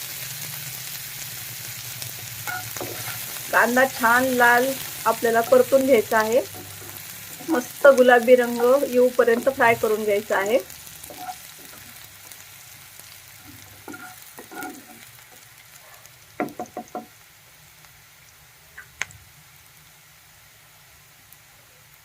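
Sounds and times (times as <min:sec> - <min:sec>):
onion sizzling in oil: 0:00.0 - 0:22.0
spoon knocking on pan: 0:16.4 - 0:17.1.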